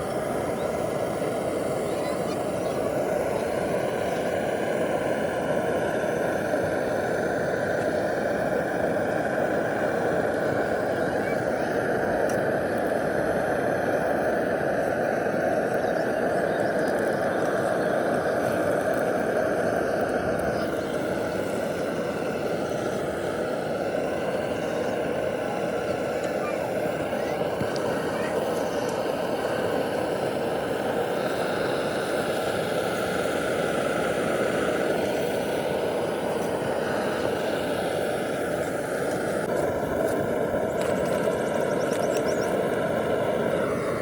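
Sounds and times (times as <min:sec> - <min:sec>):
street traffic din: 0:15.4 - 0:44.0.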